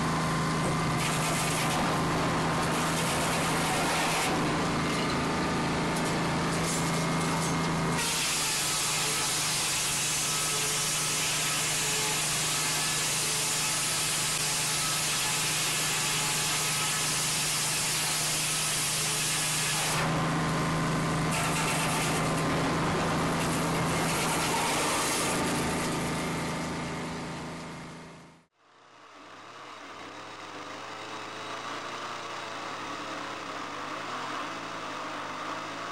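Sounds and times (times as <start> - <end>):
chainsaw cutting wood: 0.0 - 28.0.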